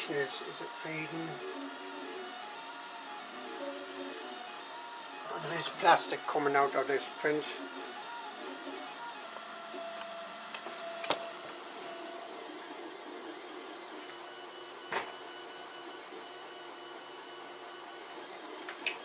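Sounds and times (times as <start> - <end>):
stepper motors whining: 0.0 - 13.2.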